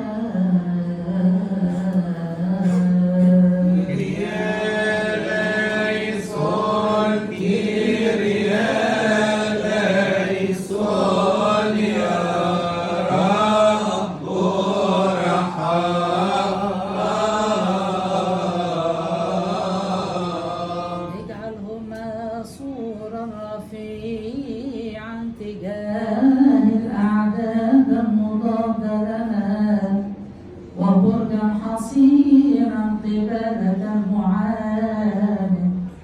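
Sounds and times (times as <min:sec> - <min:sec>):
voices singing a chant: 0:03.4 - 0:21.6.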